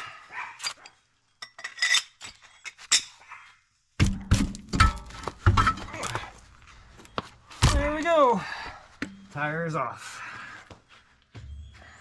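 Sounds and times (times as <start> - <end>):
knocks and heavy thuds: 4.0 - 6.4, 7.6 - 8.0.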